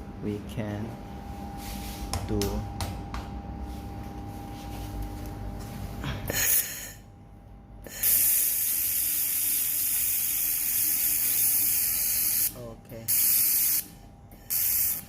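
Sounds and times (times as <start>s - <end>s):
low machine hum: 0.0s - 15.0s
laser welding gun hissing: 7.9s - 15.0s.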